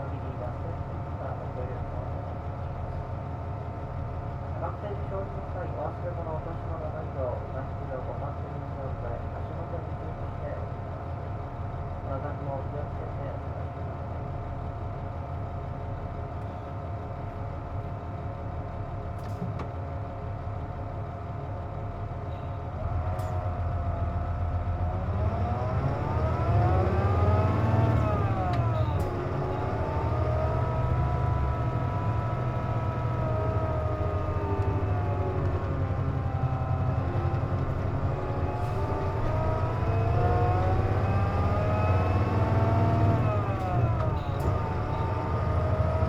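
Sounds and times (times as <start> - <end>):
bus engine whining drone: 13.8 - 46.0.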